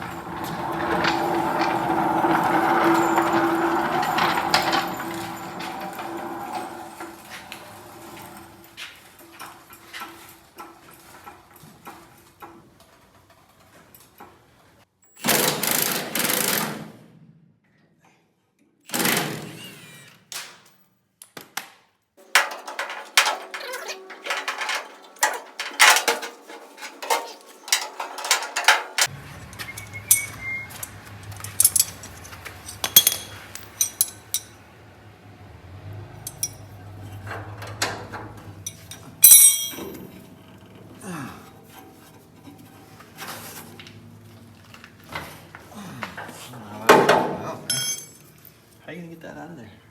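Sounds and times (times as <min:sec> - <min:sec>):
metal tools clattering: 0:00.0 - 0:11.4, 0:22.2 - 0:34.6, 0:36.2 - 0:43.7, 0:46.9 - 0:48.6.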